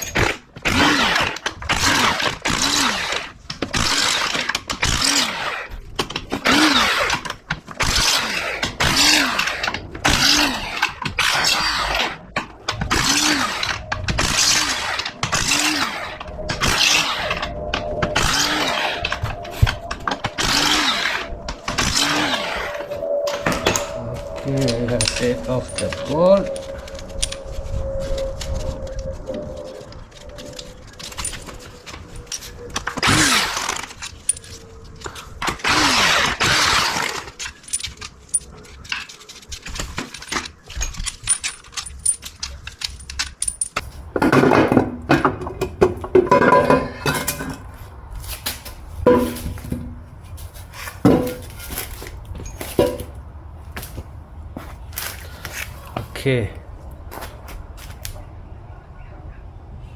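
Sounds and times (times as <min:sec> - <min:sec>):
tools clinking on metal: 0:40.0 - 0:47.8, 0:49.1 - 0:50.0, 0:52.4 - 0:53.2.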